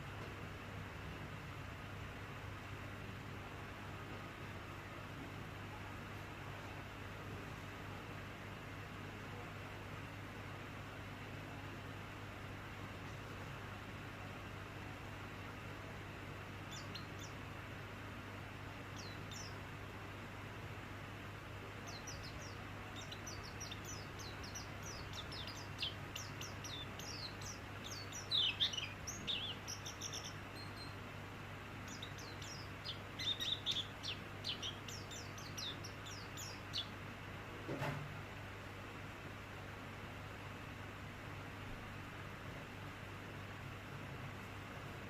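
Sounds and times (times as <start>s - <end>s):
steady low hum and hiss: 0.0s - 45.0s
bird singing high chirping notes: 21.9s - 31.0s, 31.8s - 36.9s.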